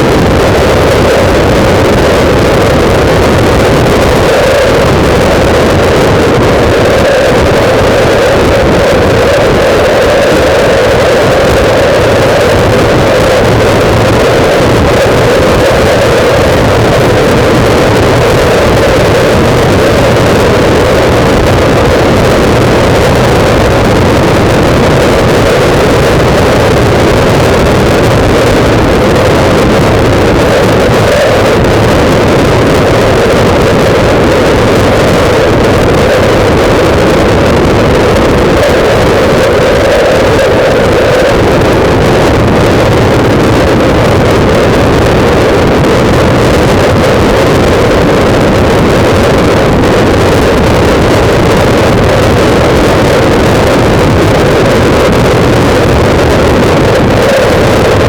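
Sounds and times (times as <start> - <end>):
wind buffeting microphone: 0.0 - 58.0.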